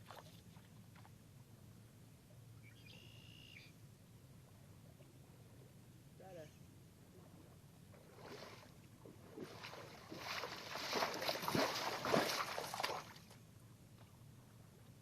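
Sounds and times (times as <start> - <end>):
water splashing and sloshing: 0.0 - 1.2, 7.9 - 13.5.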